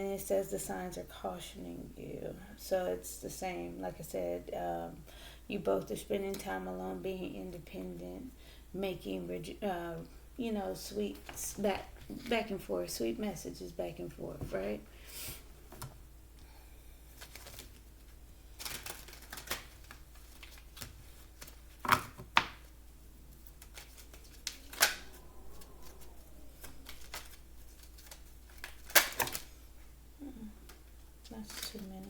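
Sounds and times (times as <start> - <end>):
cards being shuffled: 18.6 - 22.7, 23.3 - 29.6
card snaps: 26.8 - 29.5.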